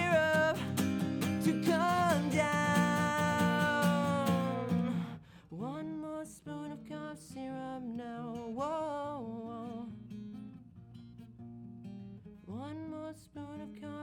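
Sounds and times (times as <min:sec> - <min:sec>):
man singing wordless melody: 0:00.0 - 0:09.9
acoustic guitar: 0:00.0 - 0:14.0.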